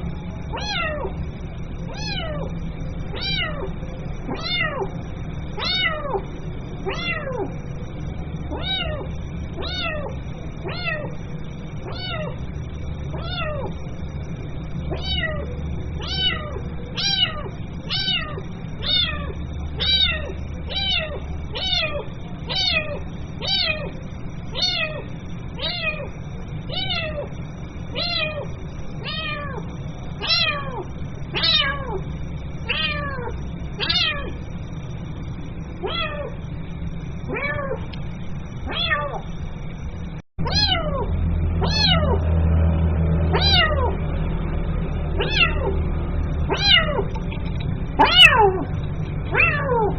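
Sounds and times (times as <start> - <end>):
steady low hum: 0.0 - 49.9
kitten meowing: 0.5 - 1.1, 1.9 - 2.5, 3.1 - 3.7, 4.3 - 4.9, 5.6 - 6.2, 6.9 - 7.5, 8.5 - 11.1, 11.9 - 12.4, 13.1 - 13.7, 14.9 - 26.1, 30.2 - 32.0, 32.7 - 34.4, 35.8 - 36.4, 40.4 - 42.2, 43.3 - 43.9, 45.2 - 45.7, 46.5 - 47.2, 48.0 - 48.7, 49.3 - 49.9.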